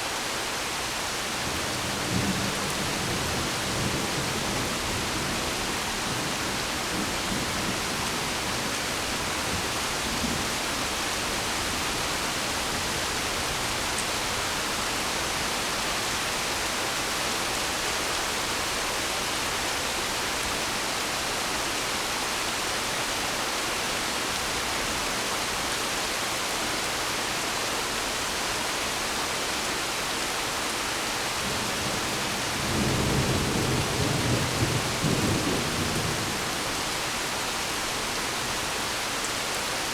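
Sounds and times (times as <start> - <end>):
steady rain hissing: 0.0 - 39.9.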